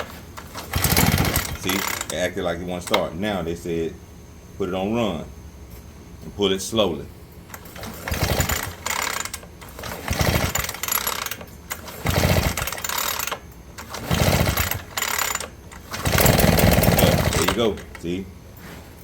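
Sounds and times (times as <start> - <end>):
two-stroke engine running: 0.0 - 3.2, 7.5 - 18.0
recoil starter pulls: 0.0 - 3.3, 7.5 - 18.2.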